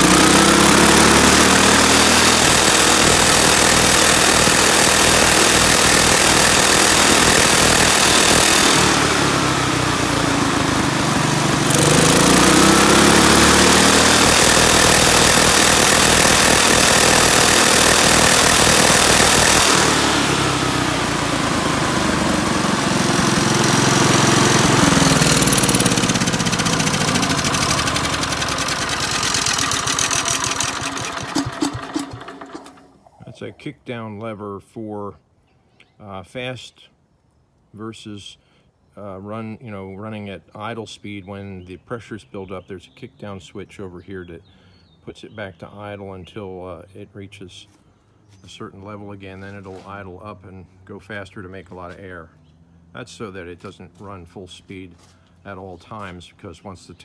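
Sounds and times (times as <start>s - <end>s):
air compressor engine running: 0.0s - 33.4s.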